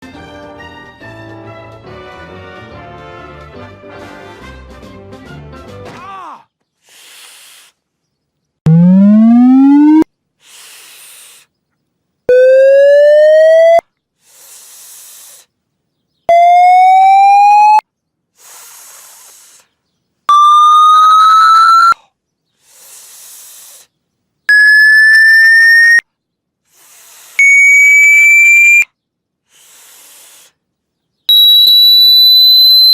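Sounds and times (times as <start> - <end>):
music: 0.0 - 6.0
cartoon man hissing through teeth: 6.9 - 7.8, 10.4 - 11.5, 14.2 - 15.5, 18.4 - 19.7, 22.6 - 23.9, 26.7 - 27.7, 29.5 - 30.6.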